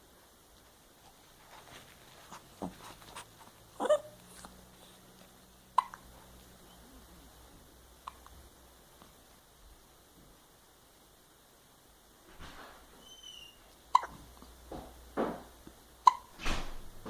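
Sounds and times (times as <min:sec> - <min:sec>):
person hiccuping: 0:05.8 - 0:06.0.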